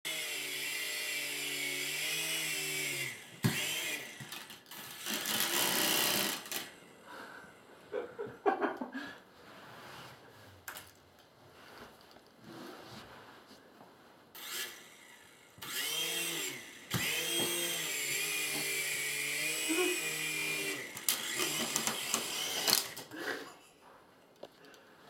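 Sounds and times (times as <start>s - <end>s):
toy helicopter rotor whirring: 0.1s - 6.8s, 14.4s - 23.2s.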